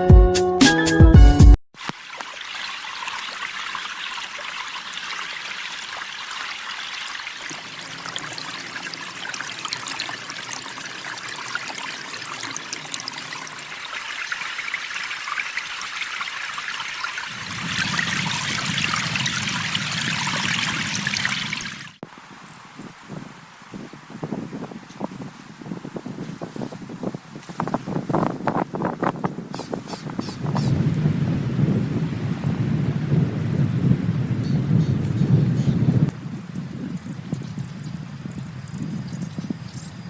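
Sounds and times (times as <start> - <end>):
trickling rushing water: 1.8 - 26.0.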